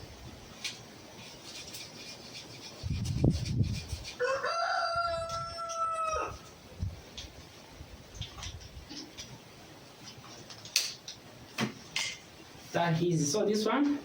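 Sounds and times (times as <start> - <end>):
rooster crowing: 4.2 - 6.6.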